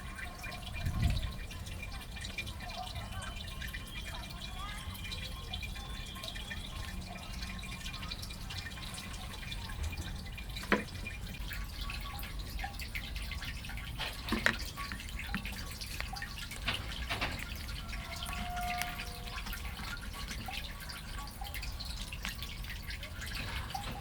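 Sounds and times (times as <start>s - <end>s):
small clicks and taps: 14.0s - 22.6s.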